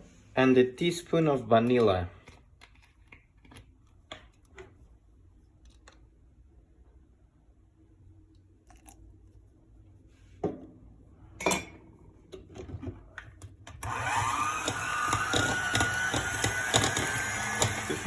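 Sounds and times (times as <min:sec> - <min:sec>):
electric mixer motor whine: 0:13.8 - 0:18.0.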